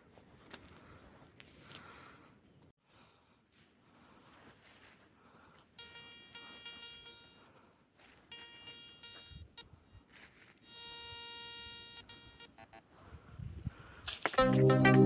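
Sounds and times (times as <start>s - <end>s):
metal detector beeping: 5.8s - 7.4s, 8.3s - 9.7s, 10.6s - 12.8s
electronic music: 14.4s - 15.0s.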